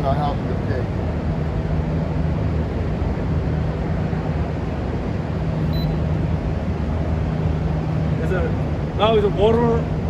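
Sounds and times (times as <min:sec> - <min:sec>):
room noise hum: 0:00.0 - 0:10.0
short high beep: 0:05.7 - 0:06.0.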